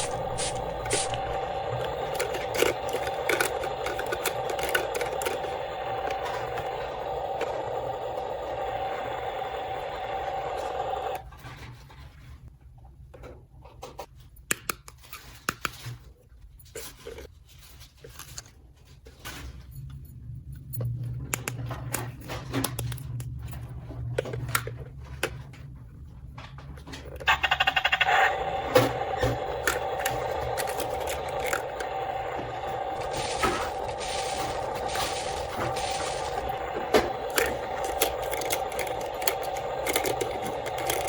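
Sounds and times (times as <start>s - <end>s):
plastic toy pieces clicking: 1.8s - 6.6s, 29.6s - 31.9s, 36.9s - 41.0s
low steady hum: 28.3s - 41.0s.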